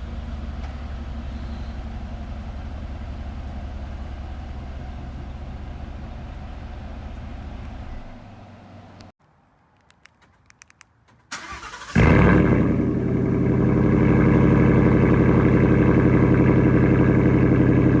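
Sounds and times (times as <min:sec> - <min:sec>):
faint clicks: 0:09.5 - 0:11.5
engine cranking: 0:09.7 - 0:13.0
engine starting and idling: 0:10.2 - 0:18.0.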